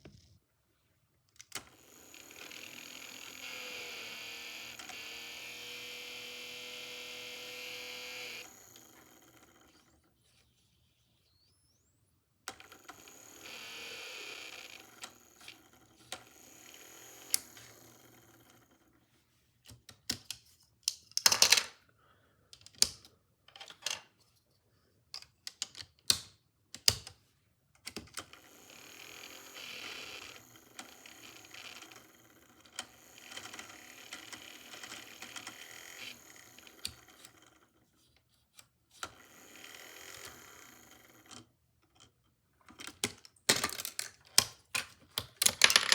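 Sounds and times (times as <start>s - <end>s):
toy motor fan whining: 1.4s - 19.0s, 28.2s - 38.0s, 39.0s - 41.5s
plastic parts clicking: 19.6s - 21.8s, 22.5s - 24.1s, 25.1s - 27.2s, 41.1s - 45.9s.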